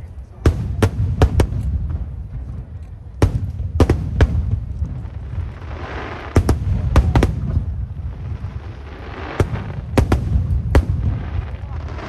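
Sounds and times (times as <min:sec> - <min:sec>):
fireworks bangs: 0:00.4 - 0:12.0
fireworks hissing crackle: 0:03.3 - 0:12.0.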